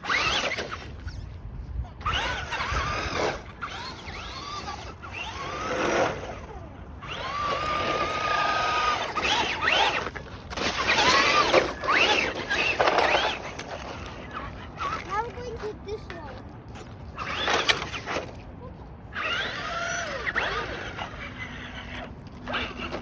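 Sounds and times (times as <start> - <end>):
tyres churning through snow: 0.0 - 1.0, 2.0 - 15.6, 17.1 - 18.4, 19.1 - 23.0
electric motor whining: 0.0 - 1.2, 2.0 - 15.1, 17.2 - 18.4, 19.1 - 23.0.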